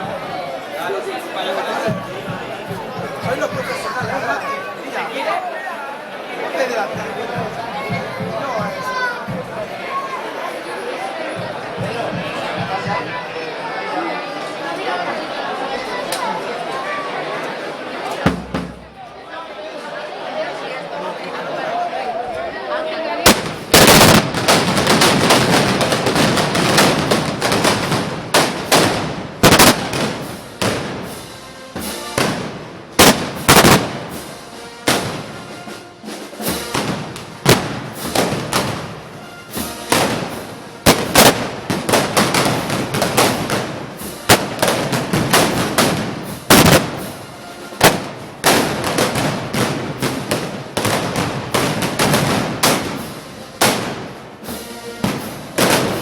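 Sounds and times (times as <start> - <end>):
festive din: 0.0 - 5.0, 6.2 - 13.9, 15.6 - 19.4, 23.2 - 56.0
firecracker bangs with echo: 18.3 - 19.0, 23.3 - 35.6, 36.5 - 47.2, 47.8 - 56.0.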